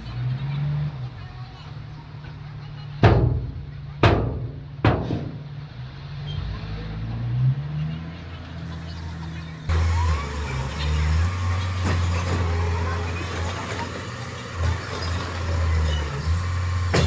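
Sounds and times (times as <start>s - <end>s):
diesel machinery droning: 0.0s - 17.0s
sharp bangs: 3.0s - 5.7s, 9.7s - 17.0s.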